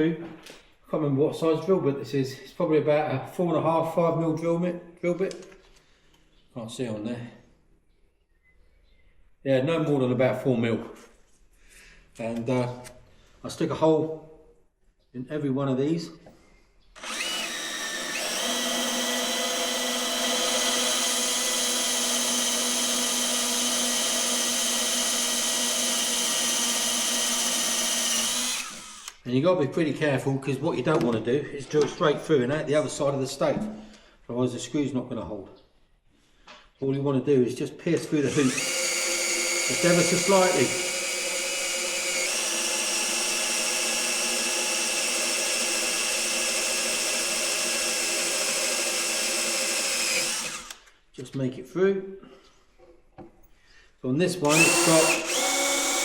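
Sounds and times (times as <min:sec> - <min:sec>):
electric drill whining: 0:17.0 - 0:29.2, 0:38.3 - 0:51.0, 0:54.4 - 0:56.0.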